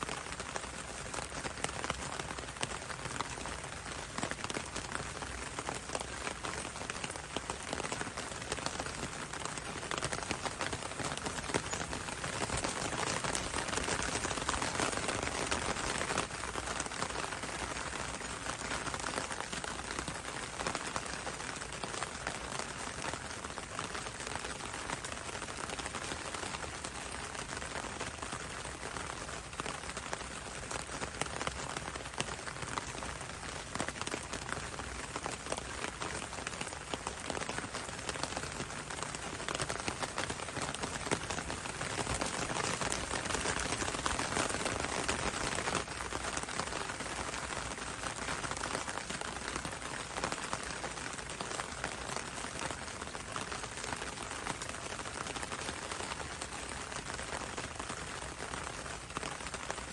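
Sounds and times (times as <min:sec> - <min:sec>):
rain falling on leaves: 0:00.0 - 0:59.9.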